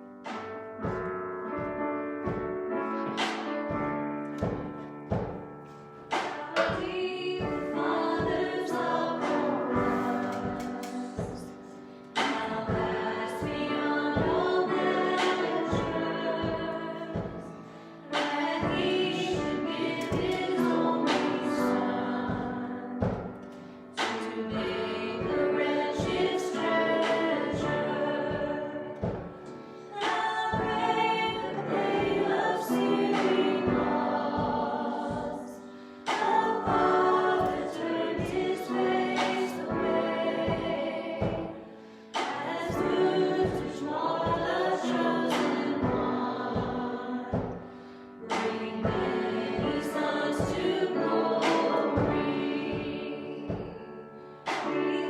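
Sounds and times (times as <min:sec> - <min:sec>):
group singing worship music: 0:00.0 - 0:55.0
drum hits: 0:00.3 - 0:11.6, 0:12.2 - 0:21.6, 0:22.2 - 0:25.4, 0:26.0 - 0:35.5, 0:36.1 - 0:41.6.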